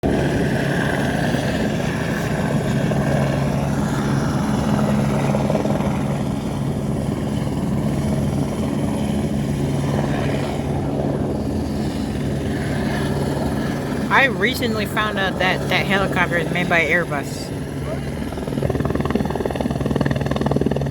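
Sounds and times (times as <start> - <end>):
low turbine drone: 0.0 - 16.3, 17.4 - 20.9
helicopter rotor beating: 0.0 - 20.9.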